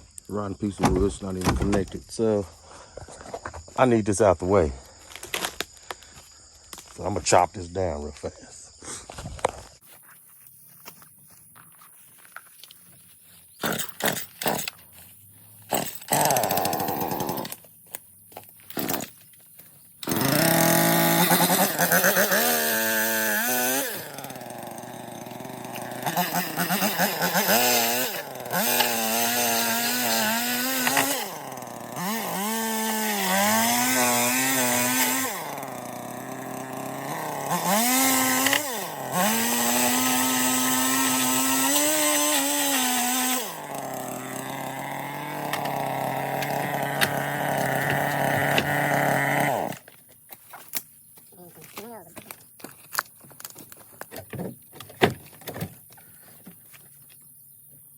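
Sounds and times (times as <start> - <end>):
chainsaw cutting wood: 13.6 - 17.7, 18.7 - 19.3, 20.0 - 50.0.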